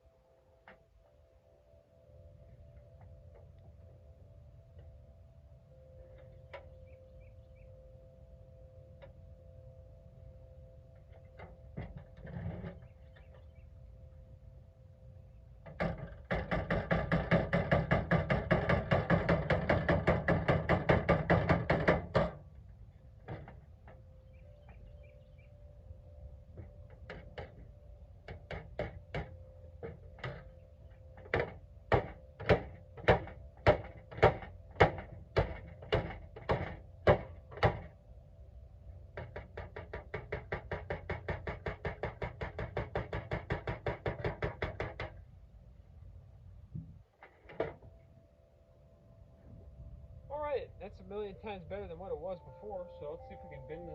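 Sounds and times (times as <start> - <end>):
hammer on sheet metal: 15.8 - 22.4.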